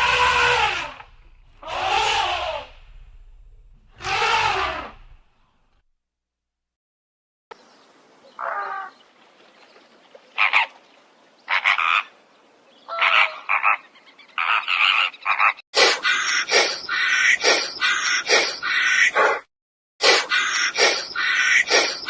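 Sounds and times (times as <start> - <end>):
animal croaking: 0.0 - 3.1.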